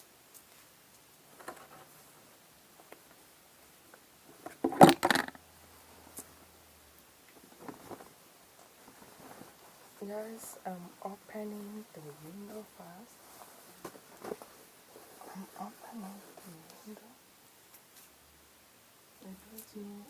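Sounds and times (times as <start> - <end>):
faint rustling: 0.2 - 18.3
clatter of knocks and scrapes: 4.5 - 5.4.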